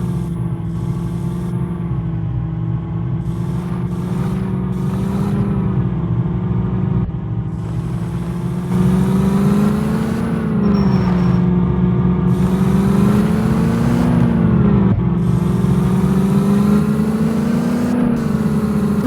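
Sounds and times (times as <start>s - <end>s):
car engine running: 0.0s - 19.0s.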